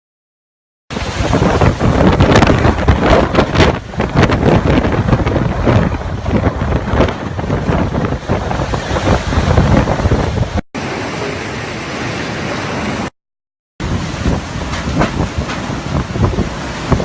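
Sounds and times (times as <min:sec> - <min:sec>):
wind buffeting microphone: 0:00.9 - 0:10.6, 0:13.8 - 0:17.0
steady rushing noise: 0:00.9 - 0:13.1, 0:13.8 - 0:17.0.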